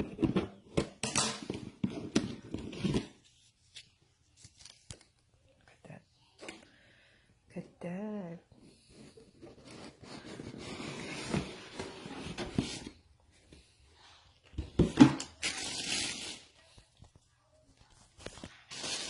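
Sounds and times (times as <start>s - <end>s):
rustling and scraping: 8.7s - 16.4s.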